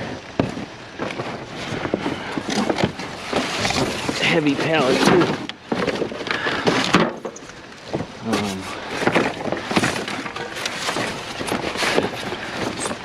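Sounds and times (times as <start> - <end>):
scrap metal clanking and scraping: 1.0 - 13.0.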